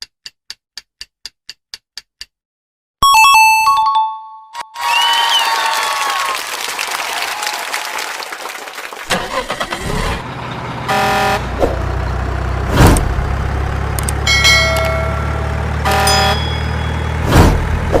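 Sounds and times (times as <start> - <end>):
horn honks: 10.8 - 11.9, 14.3 - 17.3
loud thumps: 12.7 - 13.3, 17.2 - 18.0
held tone: 14.2 - 17.3.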